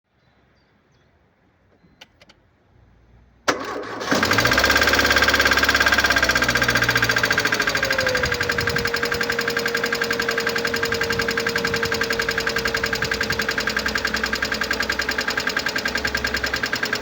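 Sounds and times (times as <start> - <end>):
engine cranking: 3.5 - 17.0
engine idling with ticking rattle: 3.5 - 17.0
engine starter clicks: 3.5 - 17.0.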